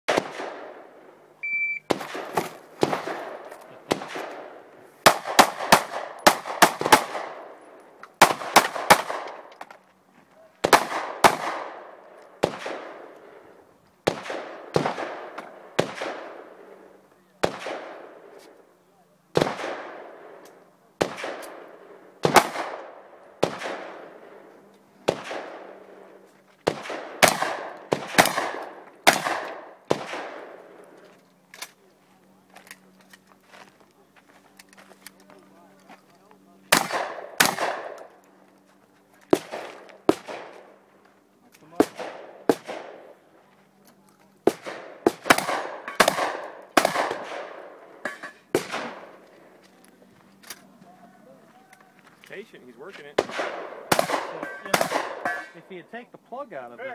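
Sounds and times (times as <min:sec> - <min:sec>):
shotgun shots echoing: 0:00.1 - 0:01.0, 0:01.9 - 0:07.6, 0:08.2 - 0:09.5, 0:10.6 - 0:13.2, 0:14.0 - 0:16.8, 0:17.4 - 0:18.3, 0:19.3 - 0:20.4, 0:21.0 - 0:24.4, 0:25.0 - 0:30.8, 0:36.7 - 0:38.1, 0:39.3 - 0:40.8, 0:41.7 - 0:43.2, 0:44.4 - 0:49.2, 0:53.2 - 0:55.8.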